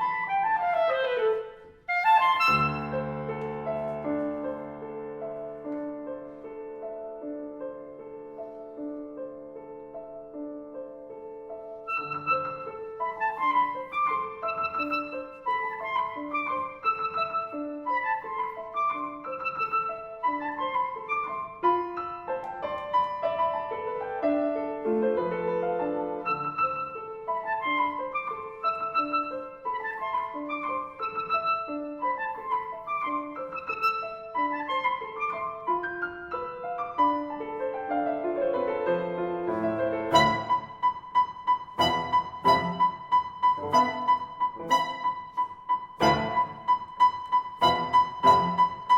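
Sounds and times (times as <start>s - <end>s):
clarinet playing: 0.0s - 3.9s, 11.7s - 22.4s, 26.0s - 37.7s, 39.5s - 48.9s.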